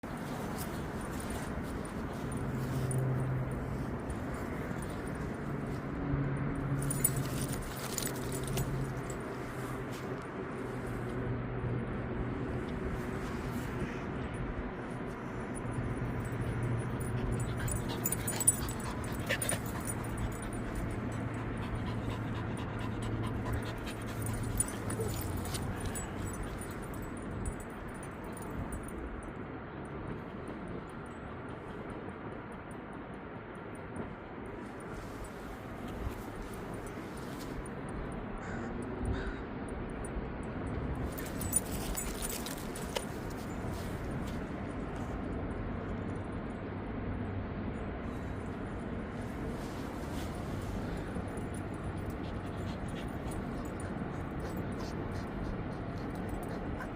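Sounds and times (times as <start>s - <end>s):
dog panting: 17.0s - 26.7s, 51.8s - 56.9s.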